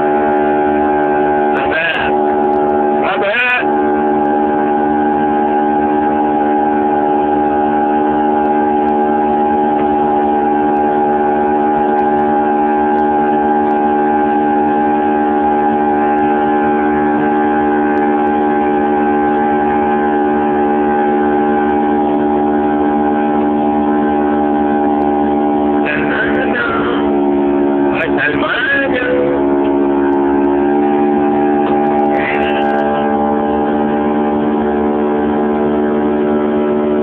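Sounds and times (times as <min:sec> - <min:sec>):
steady drone of held tones: 0:00.0 - 0:37.0
wavering pitch sound: 0:00.0 - 0:37.0.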